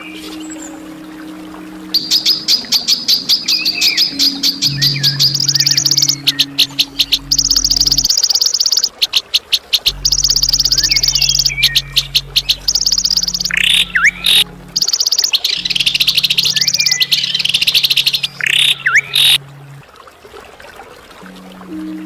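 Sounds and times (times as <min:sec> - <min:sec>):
low steady drone: 0:00.0 - 0:08.6, 0:09.9 - 0:20.1
whistled bird notes: 0:00.0 - 0:09.3, 0:09.9 - 0:19.4
songbird chattering trills: 0:02.0 - 0:19.4.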